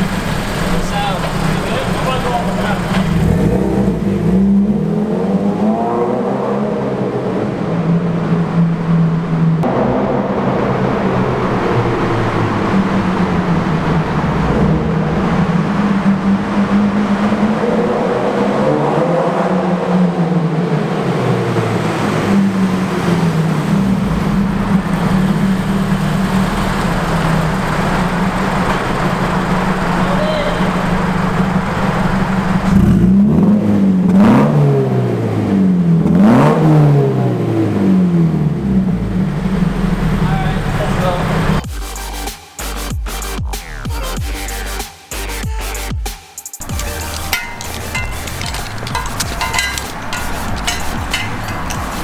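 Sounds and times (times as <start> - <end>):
car engine revving: 0.0 - 41.7.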